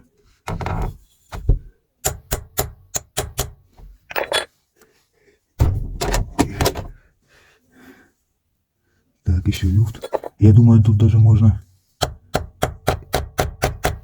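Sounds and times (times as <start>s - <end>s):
hammer striking metal punch: 2.0s - 3.6s, 12.0s - 14.0s.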